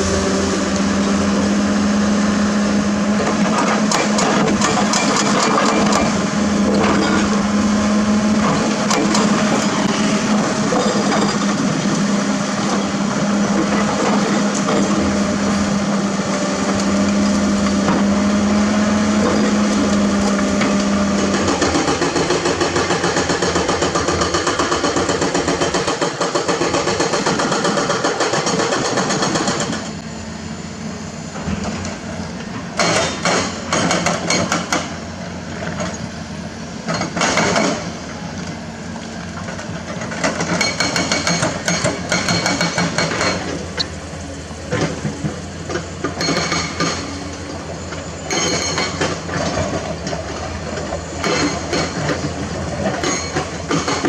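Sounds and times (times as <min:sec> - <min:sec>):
diesel engine running: 0:00.0 - 0:27.8, 0:35.0 - 0:54.0
hydraulic breaker hammering rock: 0:03.2 - 0:15.6, 0:16.6 - 0:29.9, 0:32.8 - 0:35.0, 0:36.9 - 0:37.9, 0:39.8 - 0:43.9, 0:44.6 - 0:54.0.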